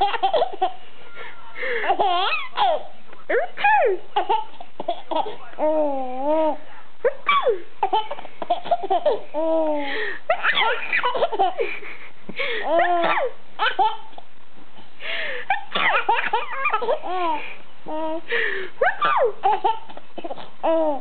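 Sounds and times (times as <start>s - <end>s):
baby laughing: 0.0s - 0.8s, 1.6s - 2.9s, 3.6s - 6.6s, 7.3s - 14.2s, 15.5s - 21.0s
adult fake sneezing: 18.8s - 19.4s.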